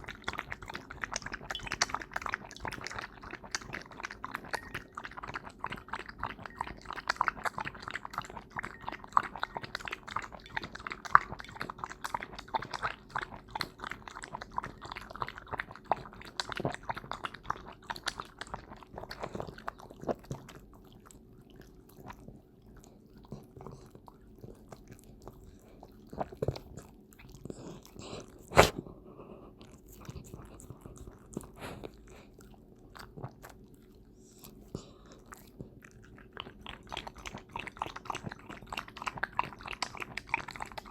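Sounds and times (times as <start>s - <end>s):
dog lapping milk: 0.0s - 28.8s, 29.4s - 40.9s.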